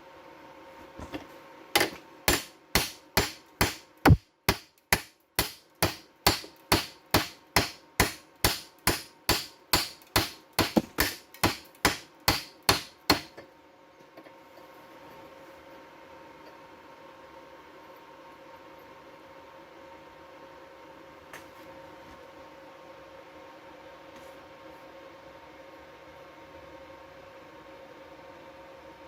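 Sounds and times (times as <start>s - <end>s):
hammer striking metal: 2.3s - 13.3s.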